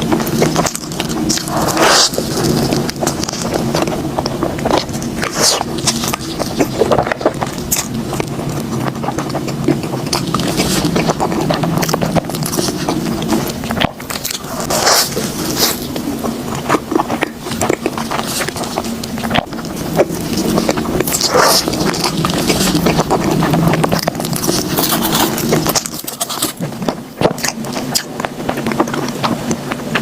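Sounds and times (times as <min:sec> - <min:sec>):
low hum: 0:00.0 - 0:30.0
person chewing food: 0:00.0 - 0:30.0.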